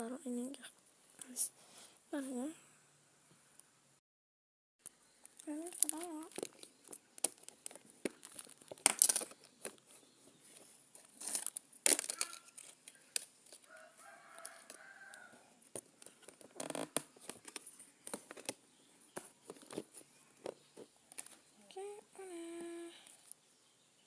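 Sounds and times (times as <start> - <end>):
packaging being handled: 5.3 - 21.5
rooster crowing: 13.6 - 15.6.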